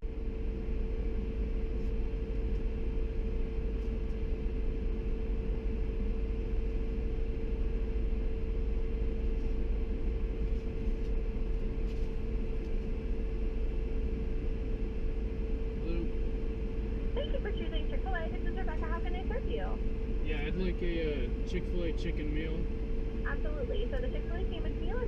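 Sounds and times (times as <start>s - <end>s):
steady even hum: 0.0s - 25.0s
engine and road rumble: 15.8s - 25.0s.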